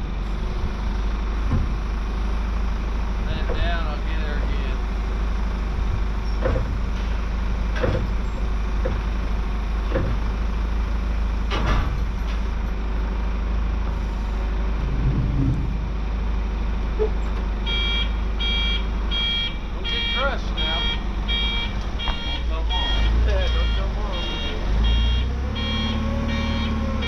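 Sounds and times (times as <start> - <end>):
vehicle motor rumble: 0.0 - 27.0
knocks and clunks: 0.3 - 2.0, 3.2 - 4.5, 5.7 - 12.9, 13.8 - 18.6, 20.6 - 25.3
high electronic beeps: 17.0 - 26.8.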